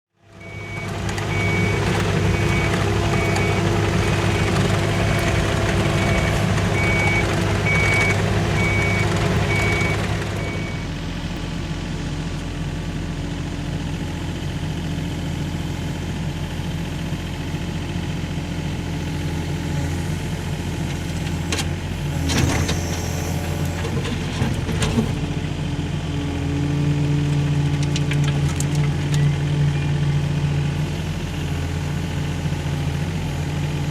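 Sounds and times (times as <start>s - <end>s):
excavator engine running: 0.2s - 33.9s
travel alarm beeping: 0.4s - 4.2s, 6.0s - 10.8s.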